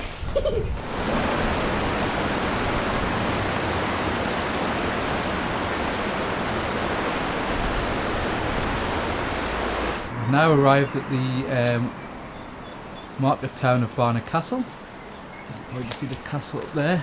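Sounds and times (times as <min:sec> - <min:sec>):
steady rushing noise: 0:00.0 - 0:10.6.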